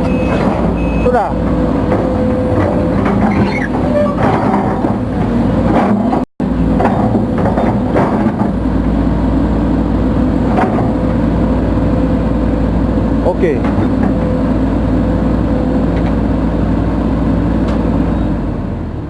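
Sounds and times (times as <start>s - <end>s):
machine knocks and clanks: 0.0s - 8.8s, 10.4s - 11.2s, 13.5s - 14.4s
excavator diesel engine running: 0.0s - 19.0s.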